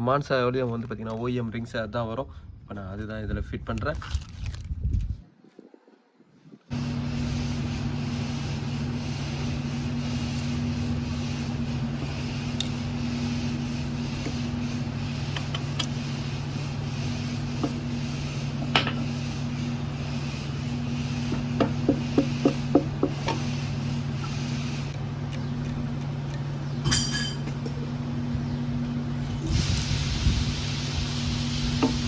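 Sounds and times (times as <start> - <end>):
low machine hum: 6.7 - 32.0.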